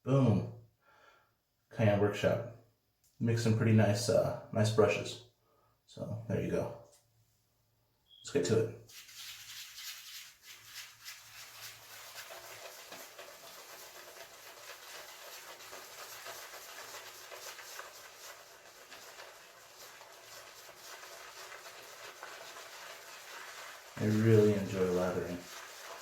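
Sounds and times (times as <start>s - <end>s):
shaving brush rustling on soap: 8.9s - 26.0s.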